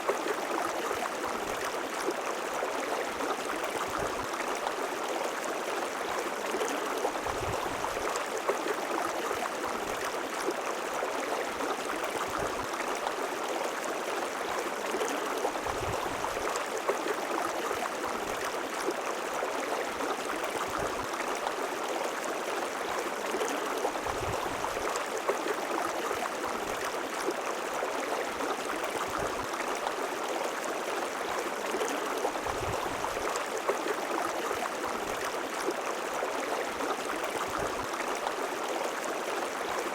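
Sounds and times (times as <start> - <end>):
low water burble: 0.0 - 39.9
river water flowing over rocks: 0.0 - 39.9.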